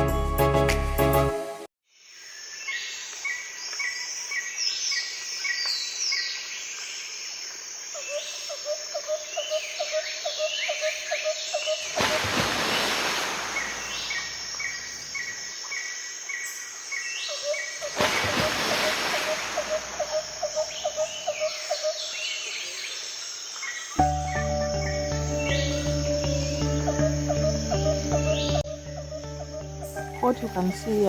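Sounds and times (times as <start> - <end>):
bird chirping: 20.0 - 31.0.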